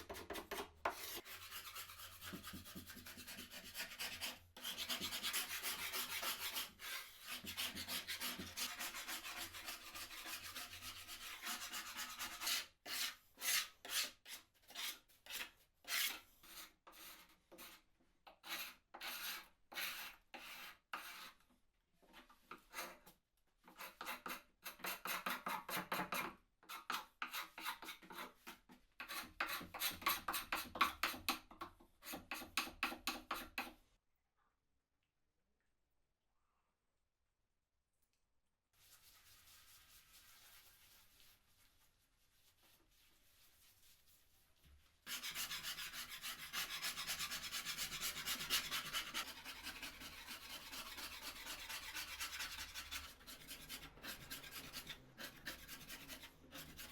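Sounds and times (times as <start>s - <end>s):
hand tool scraping wood: 45.1s - 56.9s.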